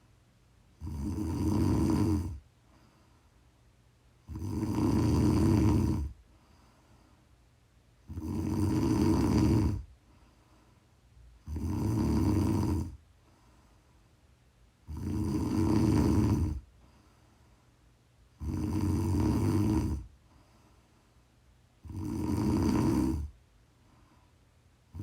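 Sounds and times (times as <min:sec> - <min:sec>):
quiet breathing: 0:00.0 - 0:25.0
person snoring: 0:00.8 - 0:02.4, 0:04.2 - 0:06.2, 0:08.0 - 0:09.9, 0:11.4 - 0:13.0, 0:14.8 - 0:16.7, 0:18.4 - 0:20.1, 0:21.8 - 0:23.4.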